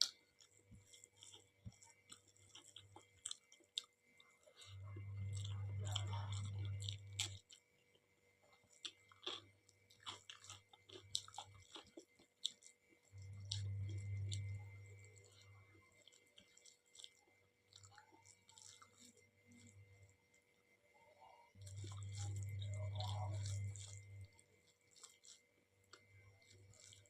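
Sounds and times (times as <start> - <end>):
wet chewing: 0.0 - 20.5, 21.6 - 27.0
low hum: 13.2 - 15.6, 21.6 - 24.3.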